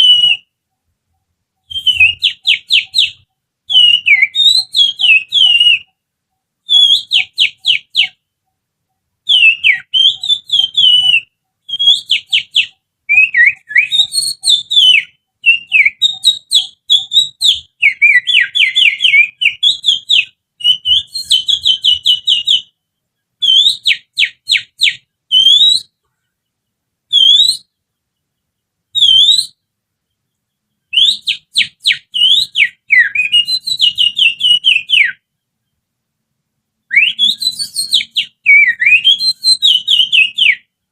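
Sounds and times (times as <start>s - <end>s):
person whistling bird-song imitation: 0.0s - 0.5s, 1.6s - 5.9s, 6.7s - 8.2s, 9.3s - 22.7s, 23.4s - 25.9s, 27.1s - 27.7s, 29.0s - 29.6s, 30.9s - 35.2s, 36.9s - 40.7s.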